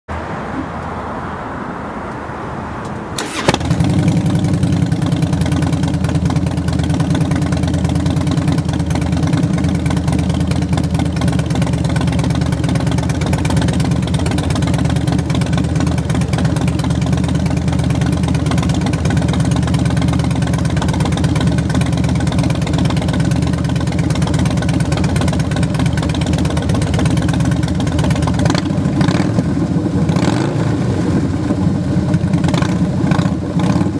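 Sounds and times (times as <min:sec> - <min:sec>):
motorcycle starter cranking: 0:03.2 - 0:05.5
motorcycle engine idling: 0:03.2 - 0:30.4, 0:31.1 - 0:33.9.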